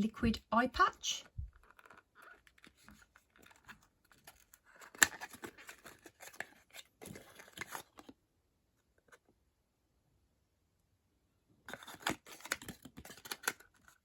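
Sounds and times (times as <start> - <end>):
hands handling packaging: 1.5 - 8.2, 11.7 - 14.0.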